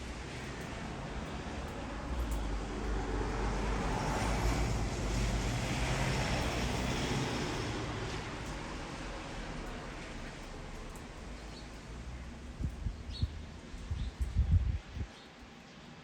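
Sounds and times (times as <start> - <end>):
vehicle passing by: 0.2 - 10.2.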